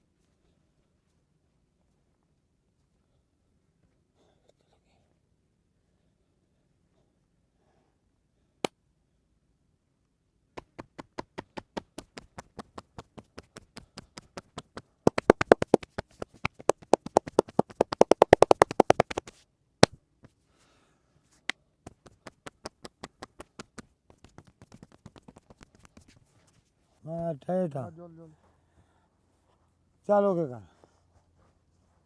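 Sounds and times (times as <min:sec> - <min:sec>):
hands slapping in massage tapping: 0:10.6 - 0:20.4, 0:21.9 - 0:26.2.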